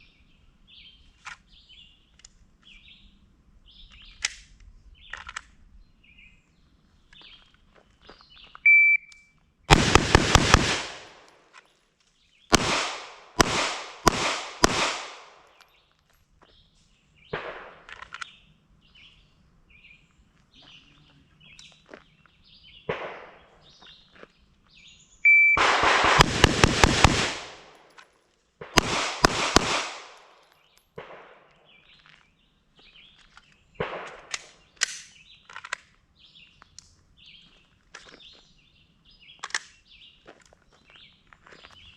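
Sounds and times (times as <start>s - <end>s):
shot timer beep: 8.7s - 9.1s, 25.3s - 25.6s
gunfire: 9.7s - 11.3s, 12.5s - 15.5s, 17.4s - 17.9s, 22.9s - 23.4s, 25.6s - 27.9s, 28.6s - 30.4s, 31.0s - 31.5s, 33.8s - 34.4s.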